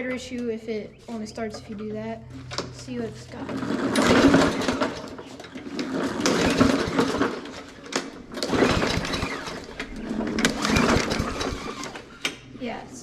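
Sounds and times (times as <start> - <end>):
mower engine cranking by recoil cord: 2.4 - 12.6.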